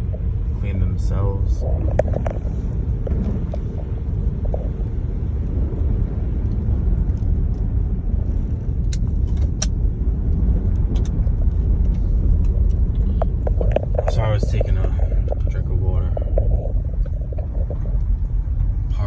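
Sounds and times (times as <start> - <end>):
car driving on snowy road: 0.0 - 19.0.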